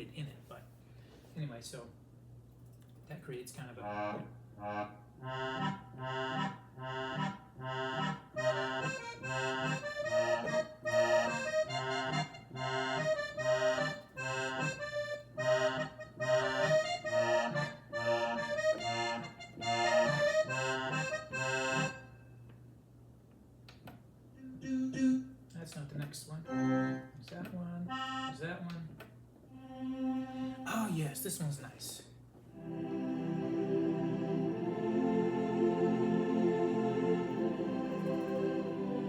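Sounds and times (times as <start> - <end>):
accordion oom-pah melody: 3.8 - 22.3, 26.5 - 27.2, 27.8 - 28.7, 29.5 - 30.7, 32.5 - 39.0.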